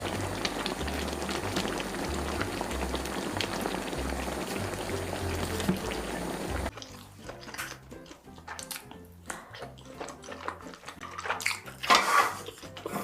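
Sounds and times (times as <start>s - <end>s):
dense crackling noise: 0.0s - 6.7s.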